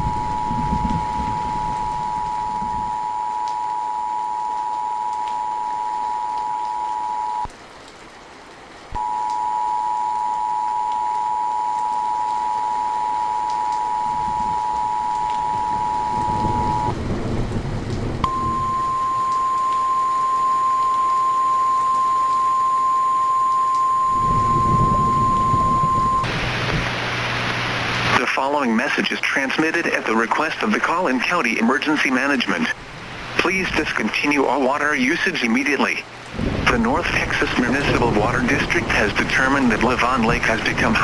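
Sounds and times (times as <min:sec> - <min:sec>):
steady warning tone: 0:00.0 - 0:07.5, 0:09.0 - 0:17.0, 0:18.2 - 0:26.4, 0:36.8 - 0:41.0
thunder rumbling: 0:00.0 - 0:07.5, 0:11.9 - 0:27.1, 0:36.2 - 0:41.0
two-tone attention signal: 0:00.0 - 0:07.5, 0:09.0 - 0:17.0, 0:18.2 - 0:26.3
rain hissing: 0:00.0 - 0:41.0.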